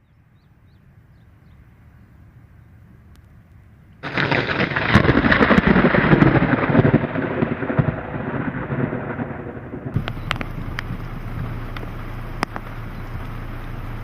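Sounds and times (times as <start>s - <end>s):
thunder crack and rumble: 4.0s - 13.4s.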